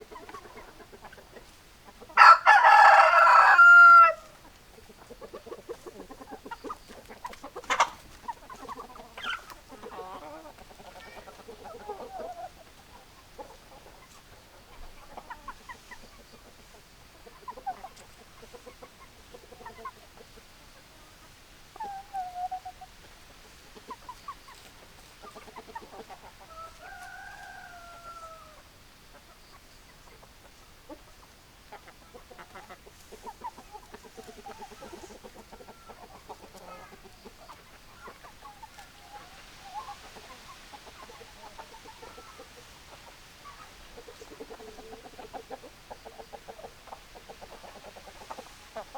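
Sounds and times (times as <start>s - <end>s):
chickens clucking: 0.0s - 48.9s
rooster crowing: 2.2s - 4.3s, 26.5s - 28.6s.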